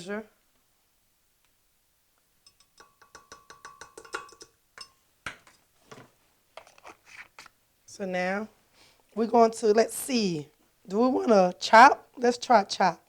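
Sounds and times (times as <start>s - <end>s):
glass and kitchenware clinking: 2.4s - 5.6s.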